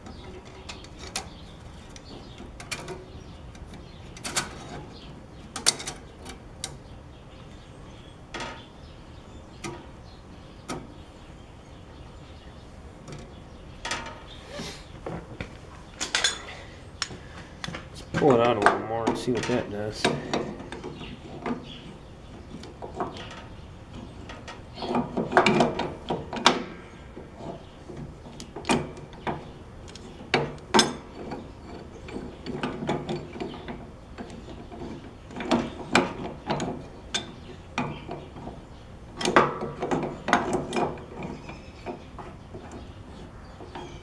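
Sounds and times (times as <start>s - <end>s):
metallic clicks and clanks: 16.0s - 44.0s.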